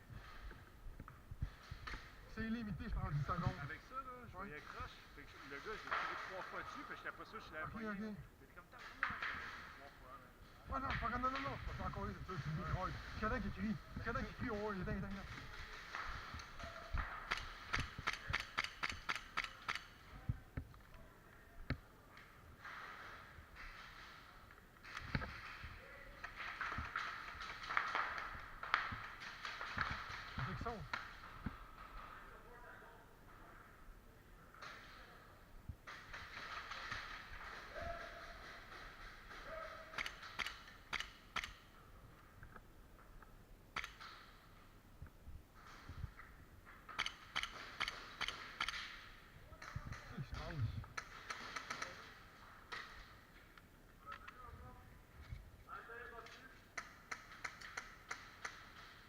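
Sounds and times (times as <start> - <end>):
faint background noise: 0.0 - 59.0
airsoft gear clicking: 16.3 - 20.0, 39.3 - 41.6, 43.8 - 44.3, 46.9 - 49.0, 51.0 - 54.4.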